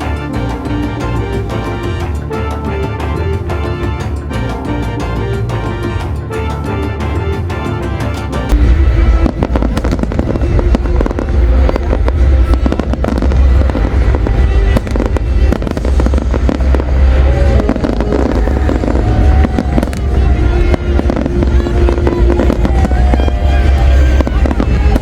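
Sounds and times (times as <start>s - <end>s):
fireworks bangs and crackles: 0.0s - 25.0s
music playing: 0.0s - 25.0s
deep firework booms: 8.4s - 25.0s.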